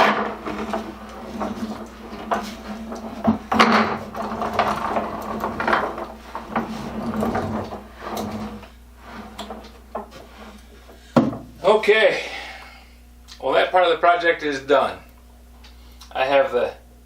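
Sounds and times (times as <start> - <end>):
wooden tool chest knocks and scrapes: 0.0 - 8.5
steady low hum: 0.0 - 17.0.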